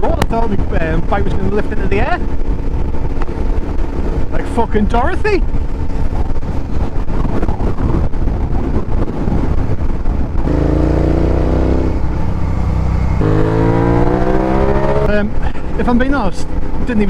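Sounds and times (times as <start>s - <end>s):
motorcycle engine accelerating: 5.6s - 15.4s
rushing noise: 6.6s - 15.8s.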